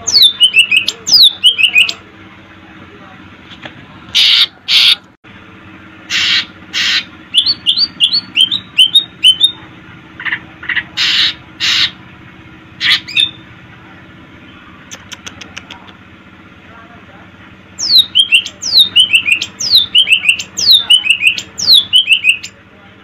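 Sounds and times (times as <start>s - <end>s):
bird chirps: 0.0s - 2.0s, 6.1s - 9.6s, 17.8s - 22.6s
bird singing harsh scratchy notes: 0.0s - 2.0s, 6.1s - 9.6s, 17.8s - 22.6s.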